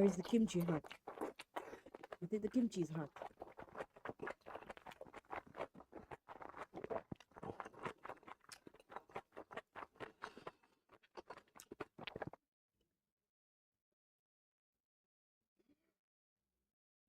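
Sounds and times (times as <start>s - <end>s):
chewing food close-up: 0.0s - 12.4s.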